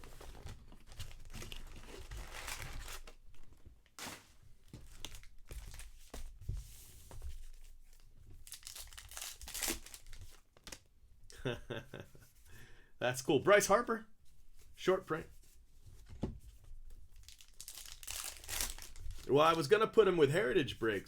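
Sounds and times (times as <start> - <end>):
card pack wrappers tearing and crinkling: 0.0 - 3.2, 3.9 - 5.8, 8.4 - 10.8, 17.2 - 19.7.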